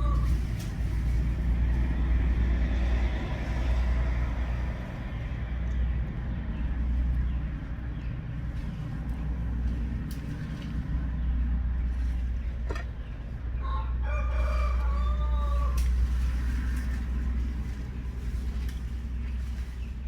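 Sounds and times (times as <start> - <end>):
steady low rumble: 0.0 - 20.0
rooster crowing: 13.6 - 16.1.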